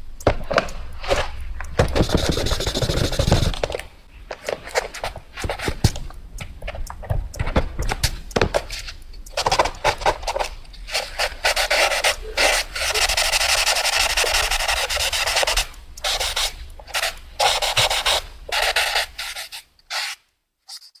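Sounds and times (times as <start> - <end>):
pencil scribbling on paper: 2.0 - 3.8, 9.4 - 21.0.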